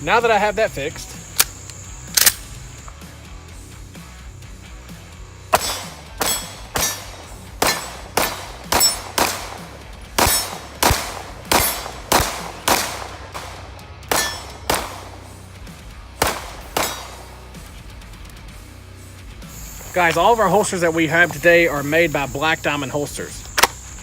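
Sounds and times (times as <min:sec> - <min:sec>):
pistol shots: 0:01.3 - 0:02.6, 0:05.5 - 0:15.3, 0:16.2 - 0:17.5, 0:23.6 - 0:23.8.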